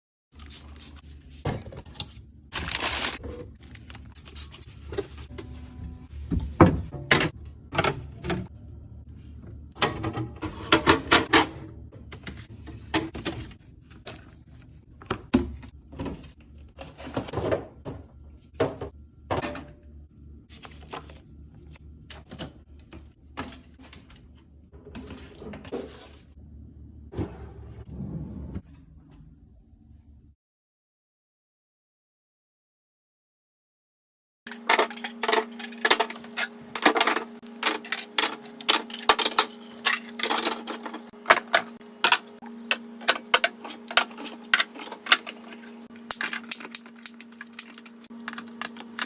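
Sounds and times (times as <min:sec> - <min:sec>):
containers clattering: 0:34.5 - 0:49.0.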